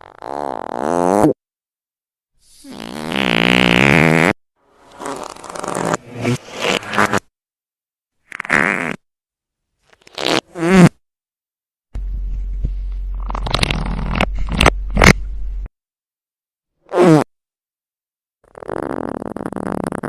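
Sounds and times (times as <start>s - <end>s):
fart sounds: 0.0s - 1.4s, 2.4s - 7.3s, 8.3s - 9.0s, 10.0s - 11.0s, 13.2s - 15.2s, 16.8s - 17.3s, 18.4s - 20.0s
low hum: 12.0s - 15.7s.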